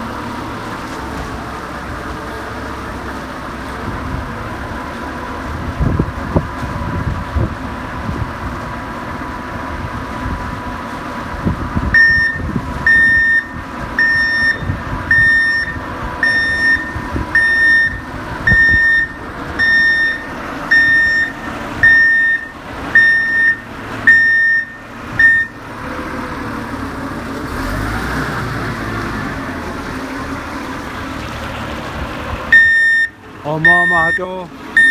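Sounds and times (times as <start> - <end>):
engine running: 0.0 - 34.9
yard noise: 0.0 - 34.9
reversing alarm beeping: 12.0 - 25.6, 32.5 - 34.9.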